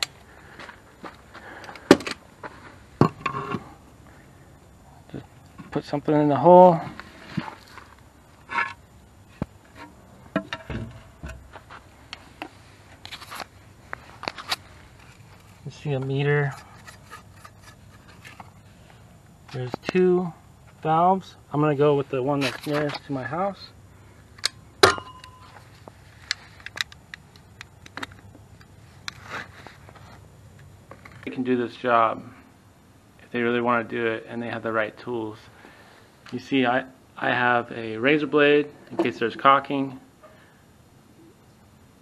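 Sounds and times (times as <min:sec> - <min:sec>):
tool scraping: 0:16.4 - 0:18.6
metal clank on valve: 0:24.8 - 0:25.5.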